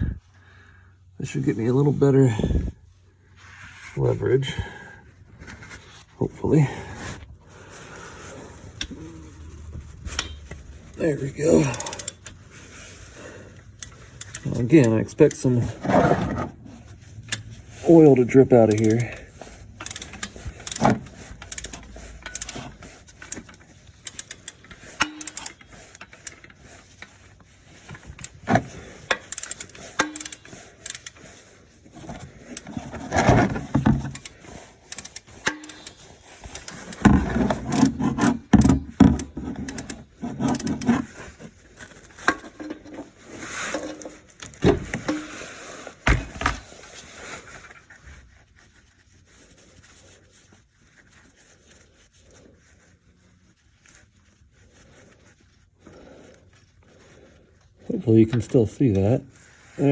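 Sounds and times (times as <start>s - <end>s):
wrench clattering against metal: 29.2s - 31.1s.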